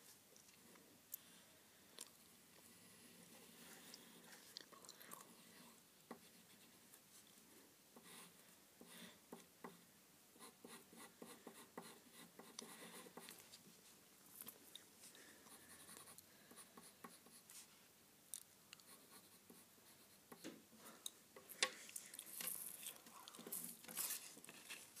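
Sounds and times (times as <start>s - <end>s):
pencil scratching on paper: 10.4s - 13.4s, 15.6s - 17.7s, 18.9s - 20.5s.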